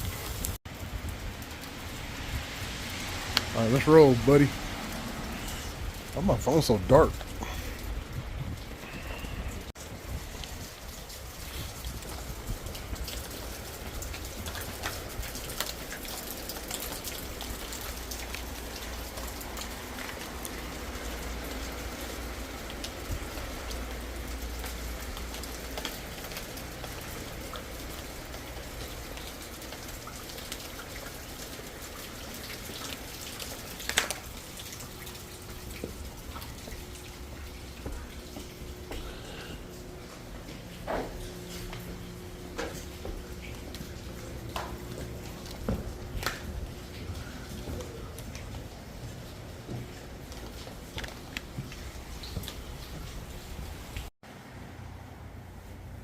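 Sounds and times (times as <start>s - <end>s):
wind rumble on microphone: 7.1s - 15.3s
faint steady hum: 34.4s - 56.0s.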